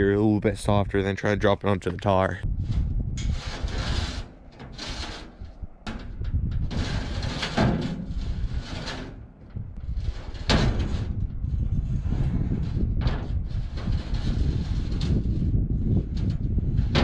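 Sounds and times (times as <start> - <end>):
metal rack scraping on truck bed: 2.6 - 17.0
metal clunks: 7.1 - 11.2.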